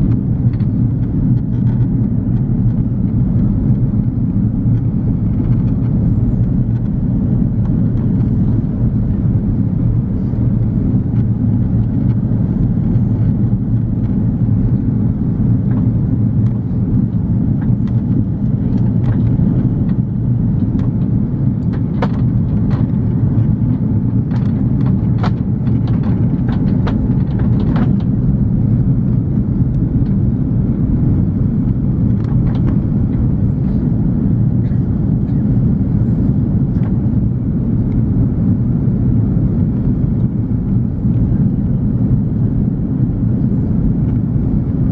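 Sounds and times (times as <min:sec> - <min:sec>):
aircraft cabin engine drone: 0:00.0 - 0:44.9
airflow around fuselage: 0:00.0 - 0:44.9
light clicks and rattles: 0:20.6 - 0:28.2.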